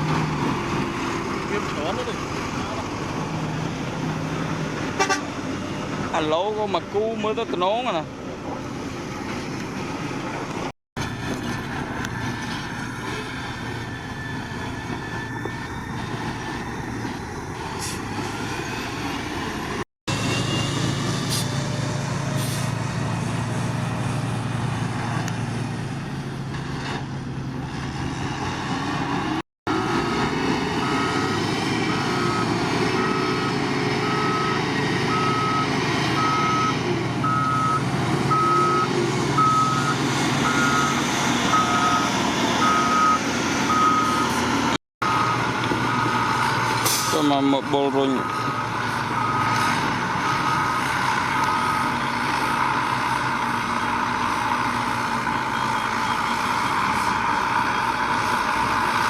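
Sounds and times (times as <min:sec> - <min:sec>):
diesel engines of heavy machines: 0:00.0 - 0:59.0
reversing alarm beeping: 0:30.8 - 0:44.4, 0:45.0 - 0:46.5, 0:47.9 - 0:49.6, 0:50.2 - 0:52.0, 0:55.3 - 0:57.0.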